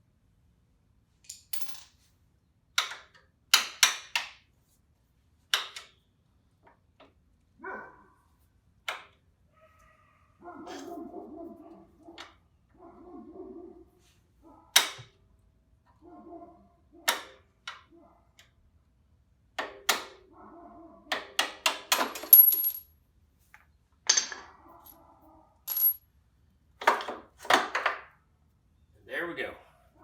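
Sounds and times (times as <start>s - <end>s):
metal clanks and clinks: 22.0s - 22.8s, 24.1s - 24.9s, 25.7s - 26.0s.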